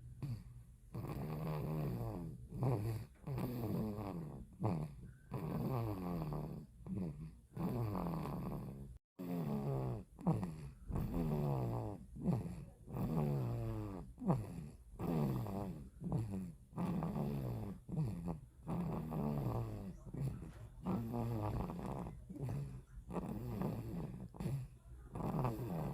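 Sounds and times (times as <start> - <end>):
whistling snore: 1.0 - 25.9.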